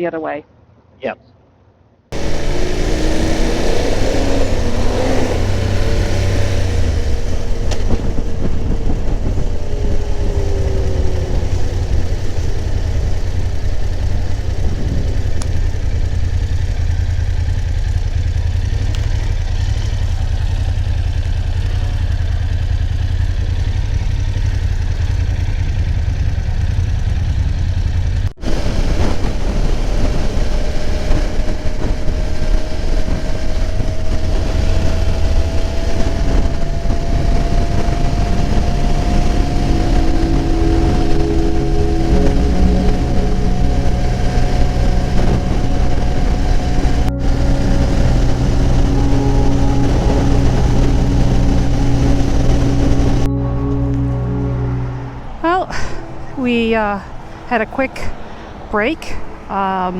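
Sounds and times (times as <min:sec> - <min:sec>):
faint rising tone: 0:02.1 - 0:17.8, 0:28.4 - 0:59.7
motorcycle engine: 0:02.1 - 0:59.9
wind rush: 0:02.2 - 0:17.5, 0:28.4 - 0:59.9.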